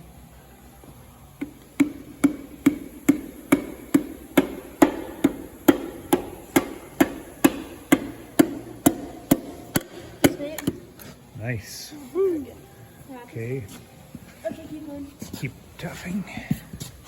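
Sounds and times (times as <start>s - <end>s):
hammer tapping with ringing: 1.4s - 10.8s.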